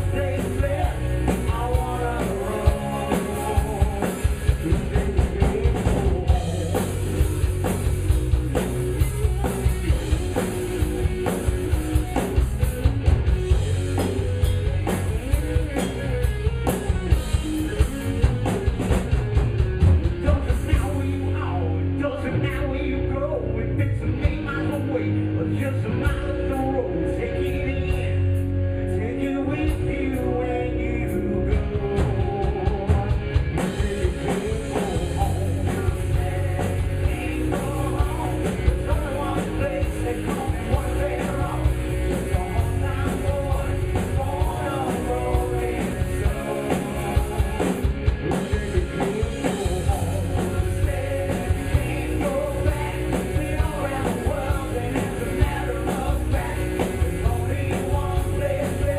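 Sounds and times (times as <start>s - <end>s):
person singing: 0.0s - 7.2s, 28.9s - 58.9s
rock band playing live: 0.0s - 58.9s.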